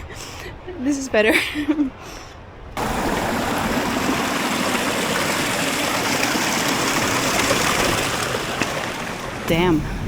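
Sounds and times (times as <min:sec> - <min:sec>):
rushing river water: 0:02.8 - 0:10.0.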